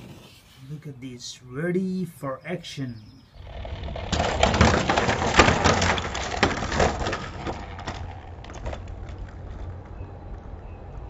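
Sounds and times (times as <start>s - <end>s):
toy truck wheels crunching over ground: 3.4s - 11.0s.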